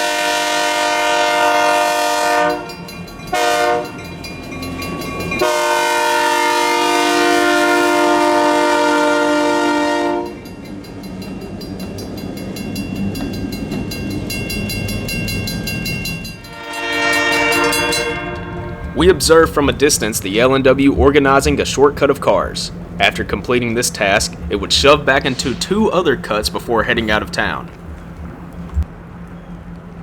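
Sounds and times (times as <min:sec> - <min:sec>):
locomotive air horn blasts: 0:00.0 - 0:04.1, 0:05.4 - 0:10.4, 0:16.4 - 0:20.0
locomotive engine rumble: 0:00.0 - 0:30.0.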